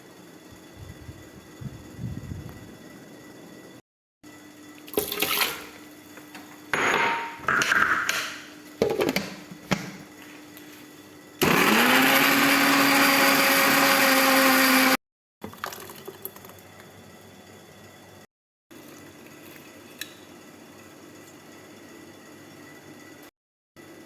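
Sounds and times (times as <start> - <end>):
kitchen items knocking and clinking: 6.2 - 10.0
blender motor running: 11.4 - 15.0.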